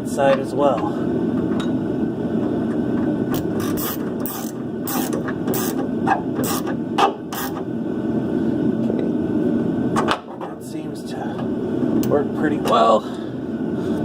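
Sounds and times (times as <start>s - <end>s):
ratchet wrench clicking: 3.4s - 5.8s, 6.4s - 6.7s.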